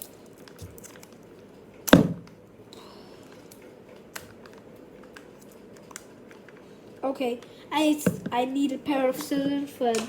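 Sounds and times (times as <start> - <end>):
light plastic crinkling: 0.0 - 1.8, 3.2 - 10.0
plastic packaging clicks: 3.3 - 6.7.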